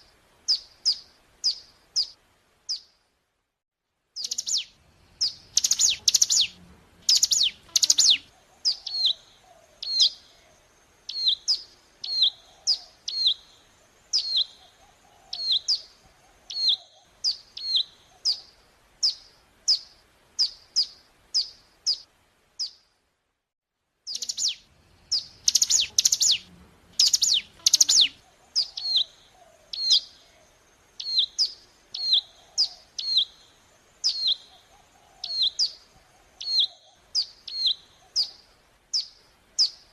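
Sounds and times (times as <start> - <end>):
bird song with sharp high notes: 4.2 - 10.3, 14.2 - 14.7, 15.4 - 22.9, 24.1 - 30.3, 31.0 - 34.6, 35.2 - 39.8.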